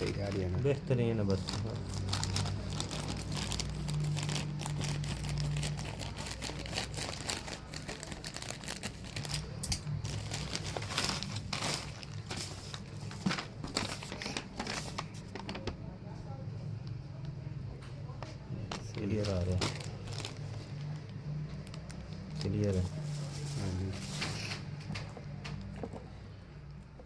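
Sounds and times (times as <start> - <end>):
plastic wrapping crinkling and tearing: 0.0 - 15.8, 18.7 - 24.3.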